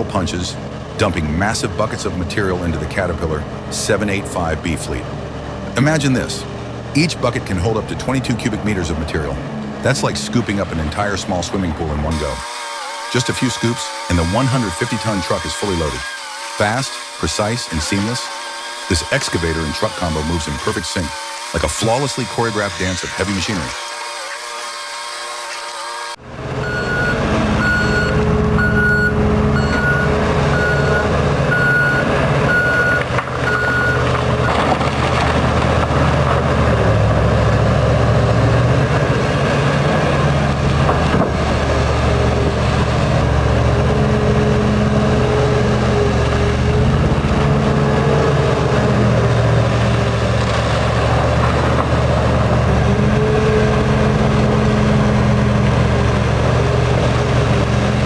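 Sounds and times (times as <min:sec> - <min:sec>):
heavy diesel machinery running: 0:00.0 - 0:58.0
reversing alarm beeping: 0:26.6 - 0:34.6.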